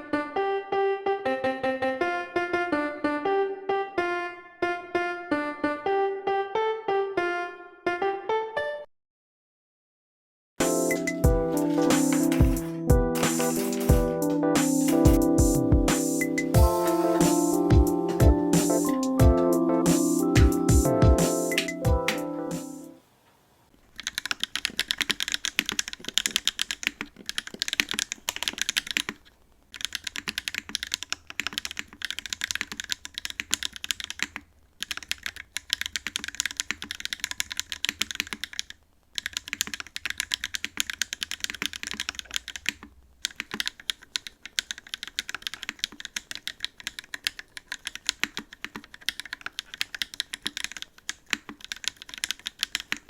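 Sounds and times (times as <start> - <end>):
mechanical keyboard typing: 10.7 - 22.3, 24.0 - 53.0.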